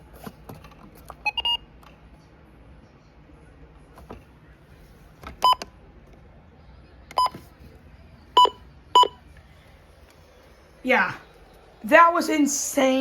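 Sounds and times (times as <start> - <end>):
short electronic beeps: 8.4 - 9.2.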